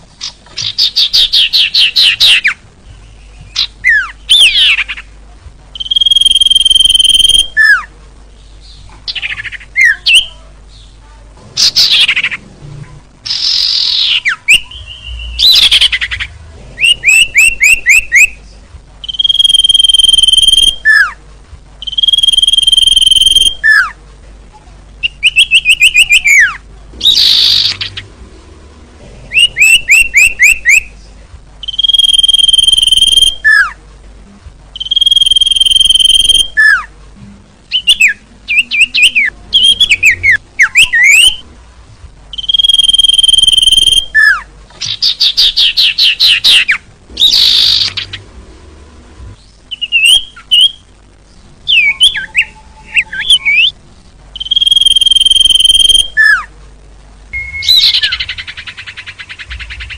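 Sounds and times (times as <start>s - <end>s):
songbird calls: 5.8s - 7.9s, 13.2s - 21.2s, 21.8s - 24.0s, 25.0s - 28.1s, 29.3s - 33.8s, 34.8s - 36.9s, 42.3s - 48.3s, 54.4s - 56.5s, 57.4s - 59.9s.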